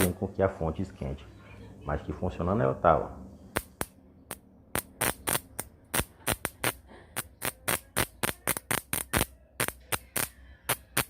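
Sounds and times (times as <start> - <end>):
transformer mains hum: 0.0 - 11.0
sparking crackling snaps: 3.5 - 11.0.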